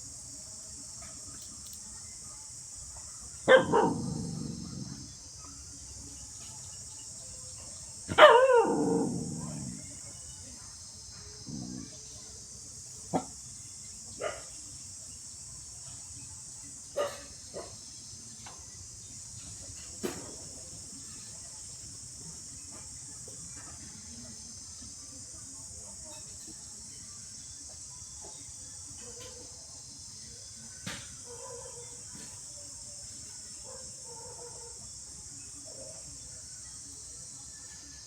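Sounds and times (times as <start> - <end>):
dog barking: 3.4 - 5.2, 8.1 - 9.9, 13.1 - 13.4, 14.2 - 14.6, 17.0 - 17.8, 31.2 - 32.3, 33.6 - 34.9.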